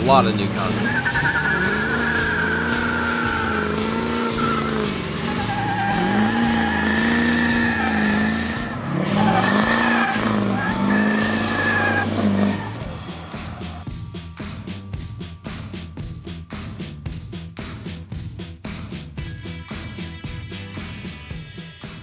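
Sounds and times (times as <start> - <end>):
tires squealing: 0.0 - 14.0
car engine revving: 0.0 - 21.2.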